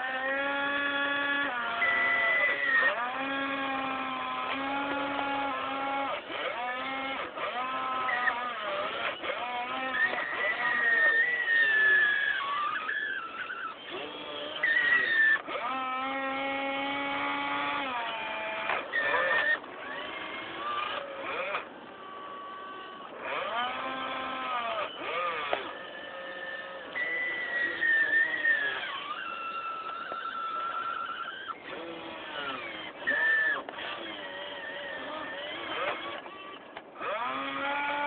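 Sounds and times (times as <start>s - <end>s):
toy excavator motors whining: 0.0s - 38.0s.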